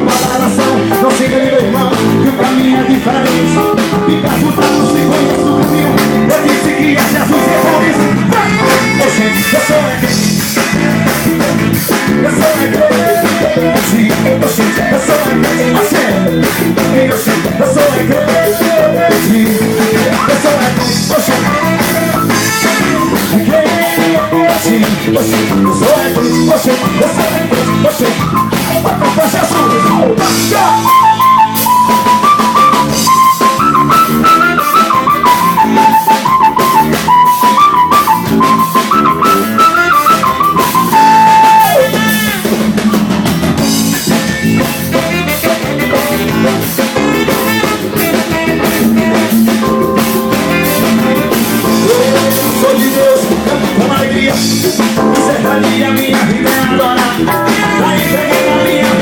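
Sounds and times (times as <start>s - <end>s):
drum kit beat: 0.0s - 59.0s
live band playing: 0.0s - 59.0s
lead melody of held notes: 3.6s - 9.0s, 48.9s - 53.0s.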